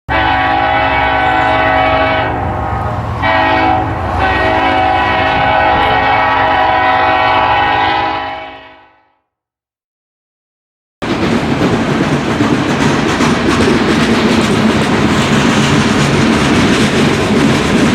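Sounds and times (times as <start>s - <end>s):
locomotive air horn blasts: 0.1s - 9.2s.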